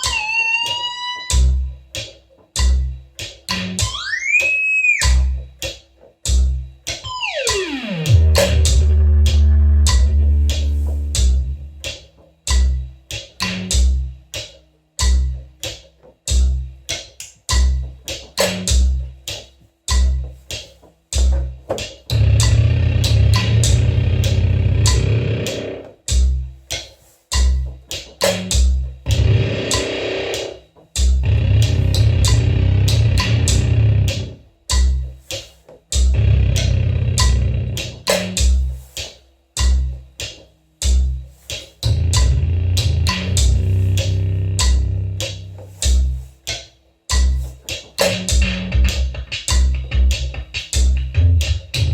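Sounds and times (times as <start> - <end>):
thumping beat: 0.0 - 51.9
plucked guitar: 22.2 - 25.8, 29.1 - 30.2, 31.2 - 34.4.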